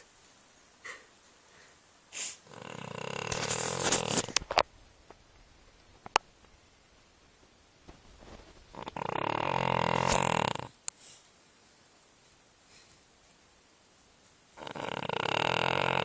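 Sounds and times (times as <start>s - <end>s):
dog snoring: 2.4s - 4.4s, 8.7s - 10.8s, 14.6s - 16.0s.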